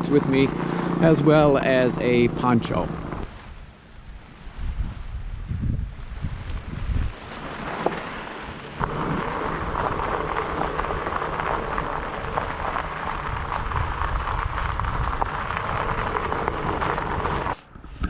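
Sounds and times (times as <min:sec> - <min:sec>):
wind rumble on microphone: 0:01.7 - 0:18.0
bike tyres crunching on gravel: 0:06.0 - 0:17.6.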